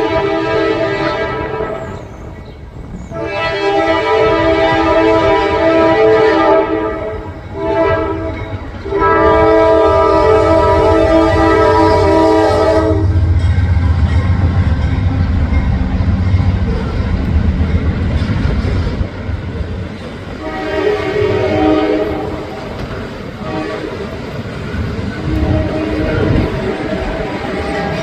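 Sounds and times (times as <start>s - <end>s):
locomotive air horn: 0.0s - 2.0s, 3.1s - 13.4s, 20.4s - 22.6s, 23.4s - 24.1s, 25.2s - 28.0s
diesel train rumbling: 0.0s - 28.0s.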